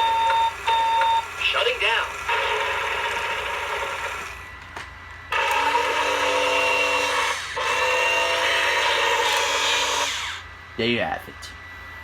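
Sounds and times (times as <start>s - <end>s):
toy electric motor whirring: 1.4s - 4.4s, 5.3s - 10.5s.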